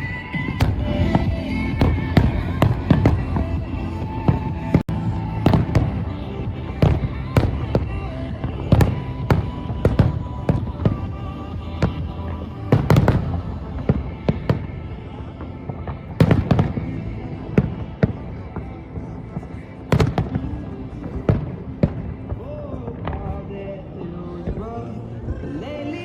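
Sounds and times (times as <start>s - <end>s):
music: 0.0s - 26.0s
fireworks bangs and pops: 0.4s - 18.7s
fireworks booms: 0.4s - 18.7s, 19.4s - 23.8s.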